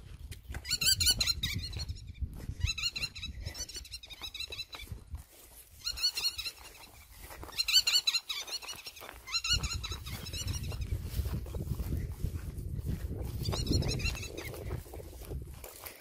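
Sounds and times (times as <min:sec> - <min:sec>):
high-pitched animal chirps: 0:00.6 - 0:05.0, 0:05.8 - 0:10.9, 0:13.3 - 0:14.7.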